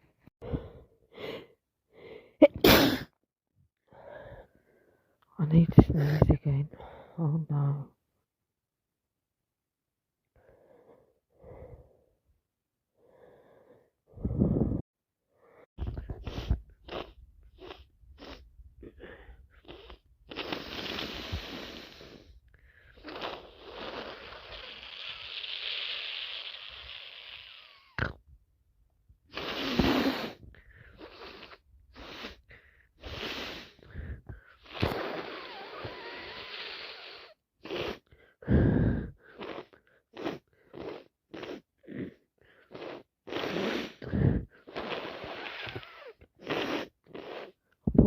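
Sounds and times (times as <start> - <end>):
person sneezing: 2.4 - 3.1
person blowing nose: 15.8 - 18.4, 19.6 - 22.3, 23.0 - 27.9, 29.3 - 33.9, 34.6 - 47.6
person sniffing: 15.8 - 18.4, 19.0 - 27.9, 29.3 - 47.6.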